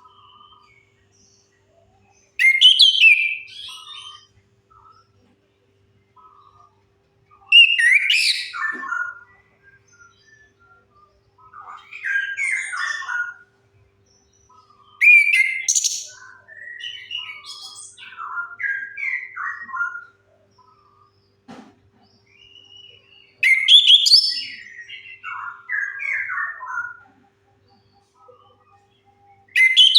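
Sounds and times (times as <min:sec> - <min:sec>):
thrush singing whistled notes: 0:15.0 - 0:19.6, 0:22.4 - 0:26.6, 0:29.5 - 0:29.9.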